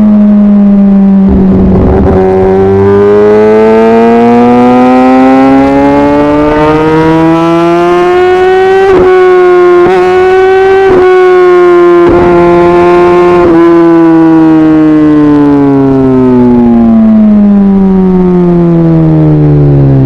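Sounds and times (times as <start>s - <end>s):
motorcycle engine accelerating: 0.0s - 20.0s.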